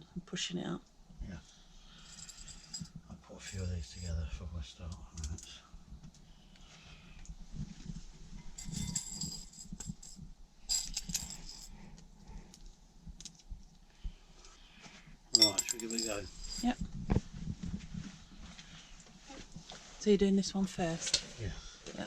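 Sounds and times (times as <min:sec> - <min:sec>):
faint handling noise: 0:02.1 - 0:04.2, 0:04.9 - 0:13.8, 0:14.9 - 0:20.0
small hardware pieces clinking: 0:08.6 - 0:11.7, 0:15.3 - 0:16.8.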